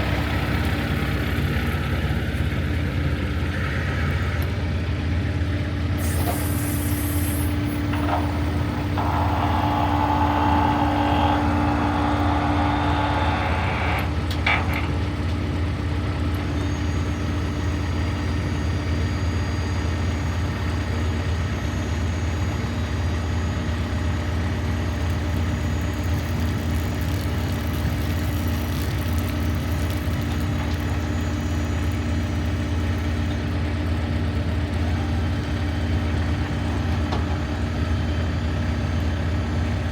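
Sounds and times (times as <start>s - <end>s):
diesel engine running: 0.0s - 39.9s
rushing hiss: 6.0s - 10.7s.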